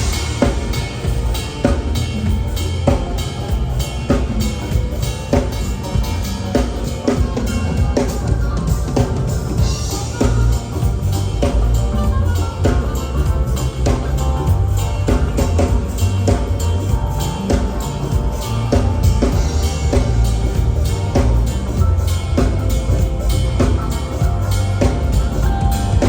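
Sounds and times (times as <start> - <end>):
bass drum and snare hits: 0.0 - 6.7
live band playing: 0.0 - 26.0.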